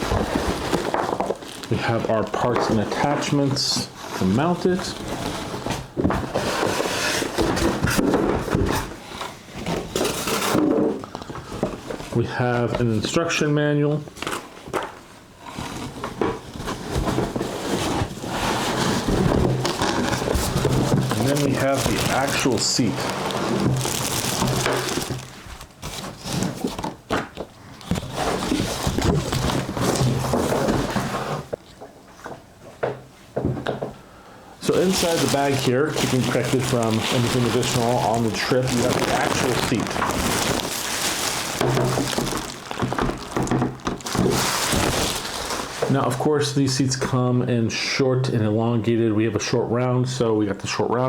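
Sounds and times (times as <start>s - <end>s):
plastic bag crinkling: 0.0s - 3.3s, 19.0s - 26.8s, 34.6s - 46.2s
packaging rustling and scraping: 0.0s - 13.1s, 14.2s - 31.6s, 34.6s - 46.3s.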